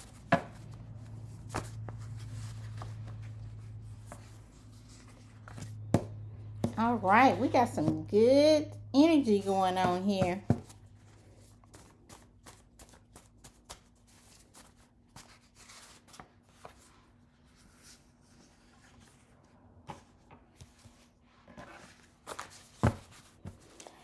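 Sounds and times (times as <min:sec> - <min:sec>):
cards being shuffled: 0:11.5 - 0:16.9.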